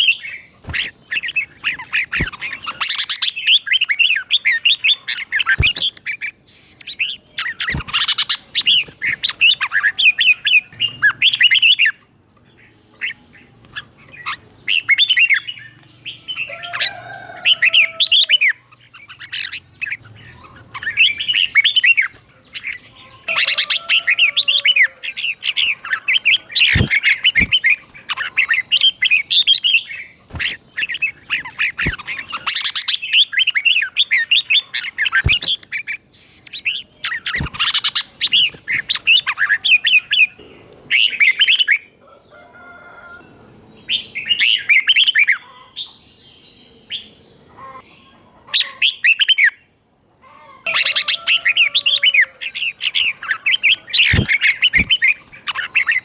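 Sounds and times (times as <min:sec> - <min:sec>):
bird warbling: 0:00.0 - 0:12.0, 0:16.2 - 0:41.7, 0:50.7 - 0:56.0.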